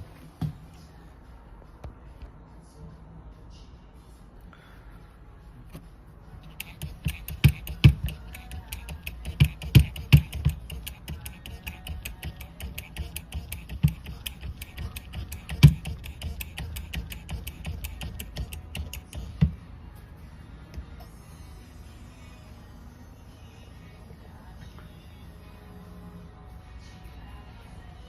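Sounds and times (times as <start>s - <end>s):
hand puncher clicking: 6.5s - 19.4s.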